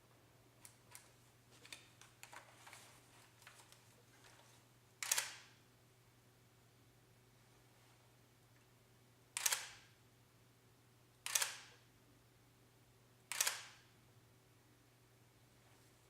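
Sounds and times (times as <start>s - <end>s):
camera shutter clacks: 5.0s - 5.5s, 9.4s - 9.8s, 11.2s - 11.7s, 13.3s - 13.8s.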